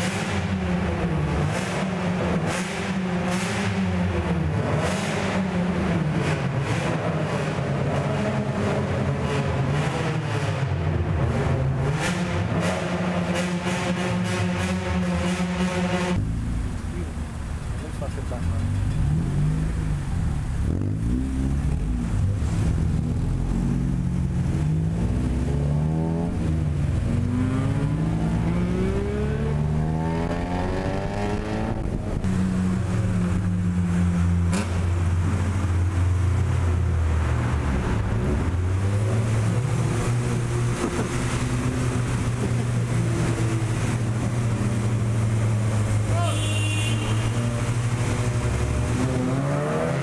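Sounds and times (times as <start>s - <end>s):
car engine accelerating: 18.1s - 46.1s, 47.4s - 50.0s.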